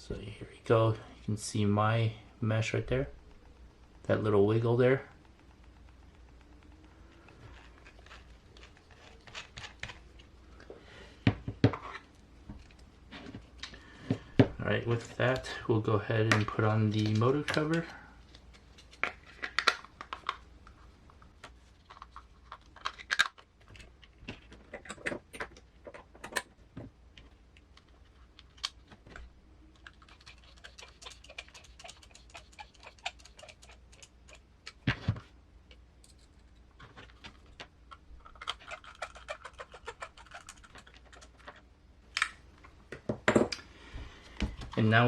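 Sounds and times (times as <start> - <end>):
plastic parts and tools clicking: 35.7 - 42.4.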